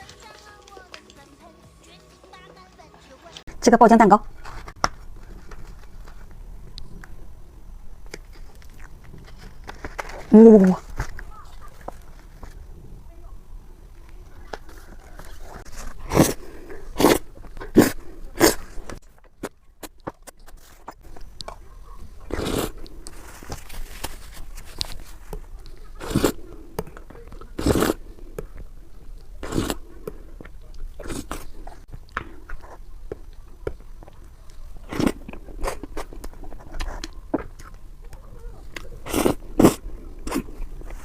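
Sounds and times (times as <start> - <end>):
chewing and mouth sounds: 14.0 - 41.0
bites: 14.4 - 23.7, 24.6 - 41.0.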